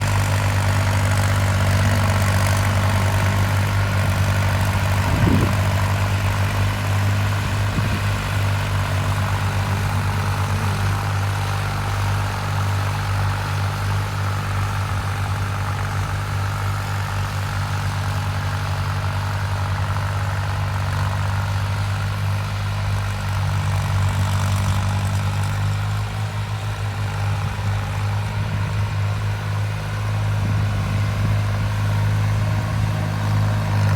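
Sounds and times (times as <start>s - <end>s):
heavy engine humming: 0.0s - 33.9s.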